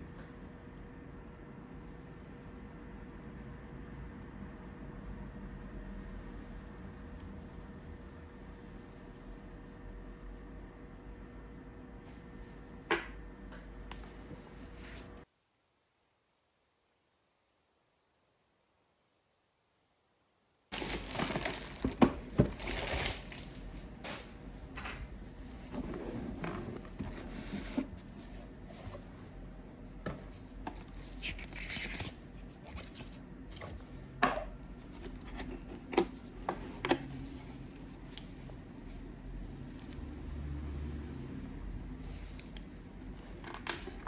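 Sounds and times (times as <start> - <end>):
plastic packaging crinkling and tearing: 20.7 - 24.3.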